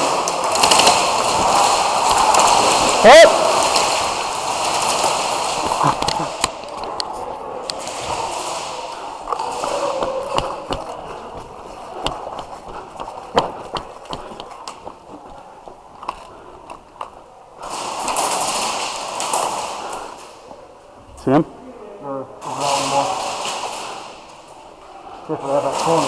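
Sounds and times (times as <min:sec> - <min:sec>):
sharp clicks and knocks: 0:09.3 - 0:15.0.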